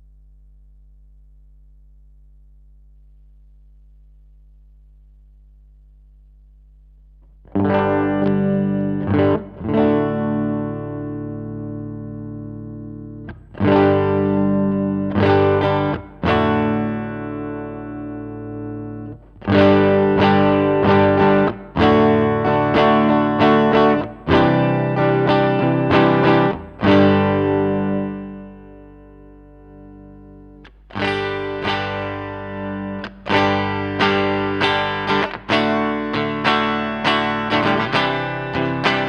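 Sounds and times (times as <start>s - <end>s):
electric guitar strummed chords: 7.3s - 39.0s.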